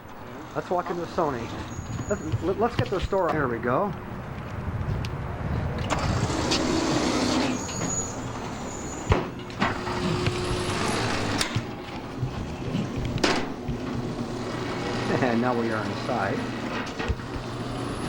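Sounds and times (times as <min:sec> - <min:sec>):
passing traffic: 0:00.0 - 0:18.0
brief high squeal: 0:01.5 - 0:02.5, 0:07.2 - 0:09.3.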